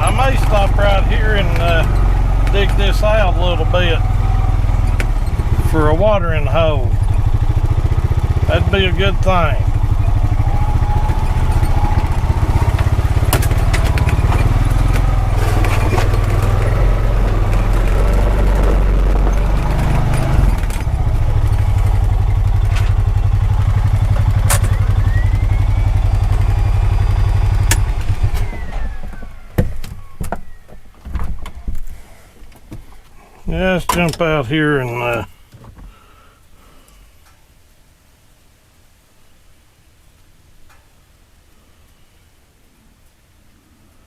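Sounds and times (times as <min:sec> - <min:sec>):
utility vehicle engine running: 0:00.0 - 0:31.4
clicks and clunks: 0:12.7 - 0:18.2, 0:24.1 - 0:24.9, 0:27.6 - 0:33.2, 0:33.8 - 0:34.3.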